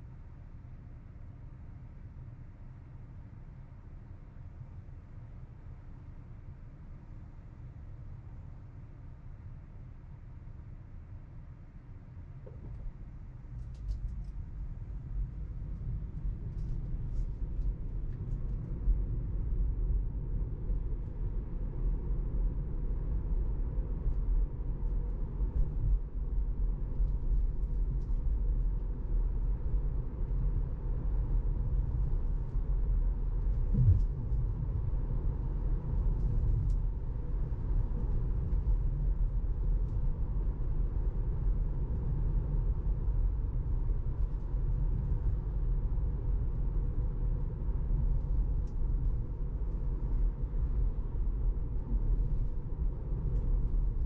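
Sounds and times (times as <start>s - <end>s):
road and tyre rumble: 12.4s - 54.0s.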